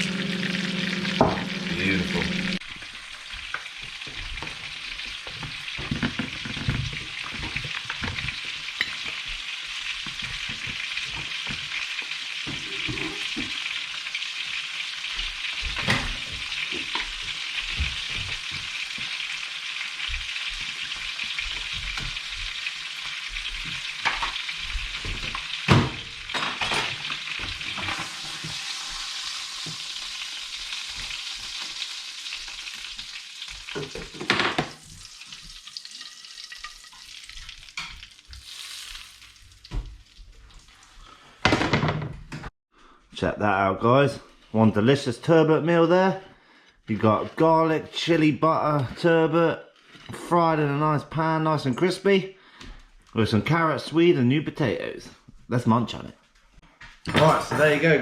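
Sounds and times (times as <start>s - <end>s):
fish sizzling in a pan: 0.0s - 41.3s.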